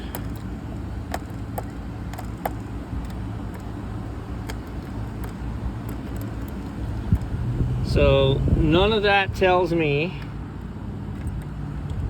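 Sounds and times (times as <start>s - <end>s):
low outdoor rumble: 0.0s - 12.0s
light sharp clicks and taps: 1.1s - 3.7s, 4.4s - 7.3s.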